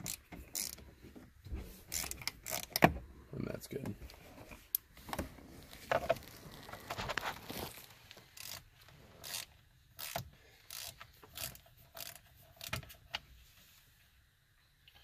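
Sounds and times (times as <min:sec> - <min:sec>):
hand ratchet rasping: 0:00.0 - 0:00.8, 0:01.9 - 0:02.9, 0:08.3 - 0:13.0.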